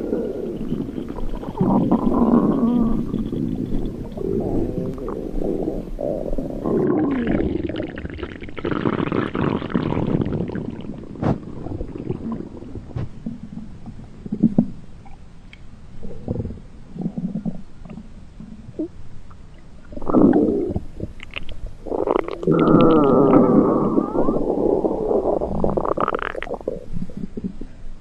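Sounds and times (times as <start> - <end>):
stomach rumbling and gurgling: 0.0 - 15.2, 16.0 - 28.0.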